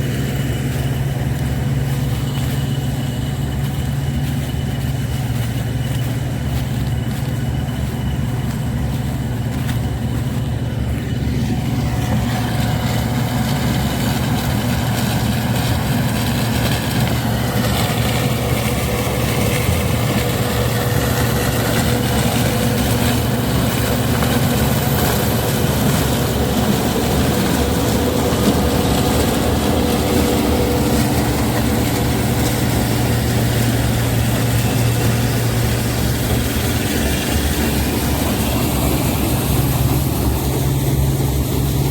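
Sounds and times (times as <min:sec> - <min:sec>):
combine harvester engine drone: 0:00.0 - 0:41.9
machinery whine: 0:00.0 - 0:41.9.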